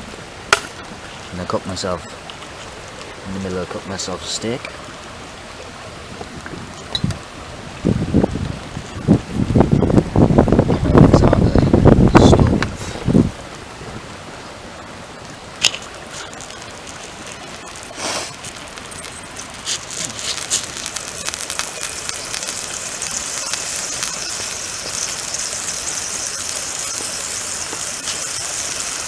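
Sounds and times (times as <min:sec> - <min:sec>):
steak sizzling in a pan: 0:15.6 - 0:29.0.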